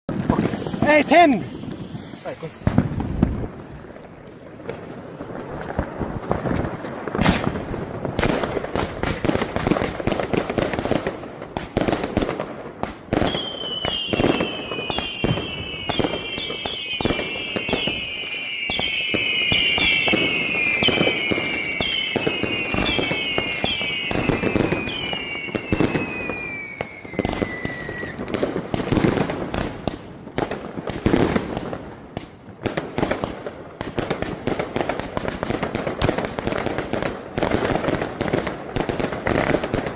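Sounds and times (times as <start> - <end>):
fireworks mortar shots: 0.1 - 39.9
falling firework whistles: 13.2 - 28.4.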